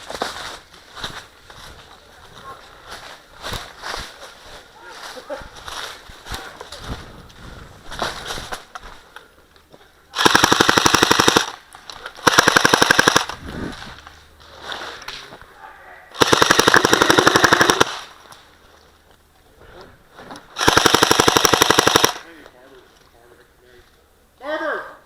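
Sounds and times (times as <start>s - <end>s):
airsoft gun firing full-auto bursts: 10.2s - 11.6s, 12.2s - 13.4s, 16.2s - 18.1s, 20.6s - 22.2s.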